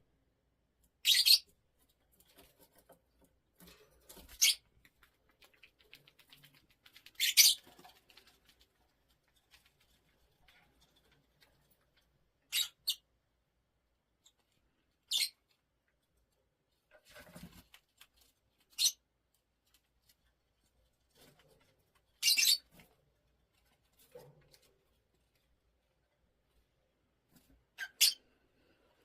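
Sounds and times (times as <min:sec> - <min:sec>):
parrot high squeaks: 0:01.0 - 0:01.4, 0:07.2 - 0:07.6, 0:12.5 - 0:13.0, 0:22.2 - 0:22.6, 0:27.8 - 0:28.2.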